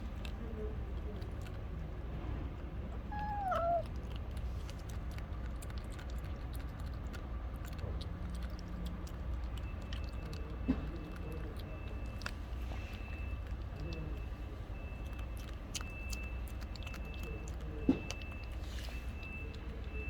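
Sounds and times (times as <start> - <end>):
cat meowing: 3.0 - 4.0.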